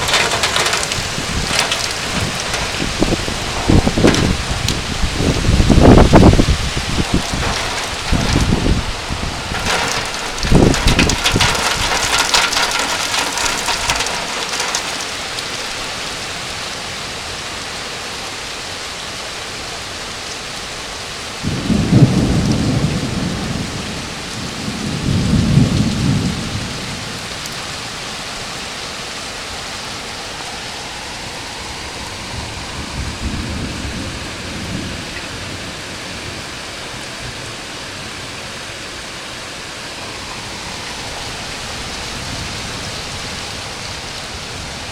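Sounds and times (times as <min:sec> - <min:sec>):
thunder rolling: 0:00.0 - 0:15.9, 0:21.4 - 0:27.4, 0:30.7 - 0:36.6
steady rain falling: 0:00.0 - 0:44.9.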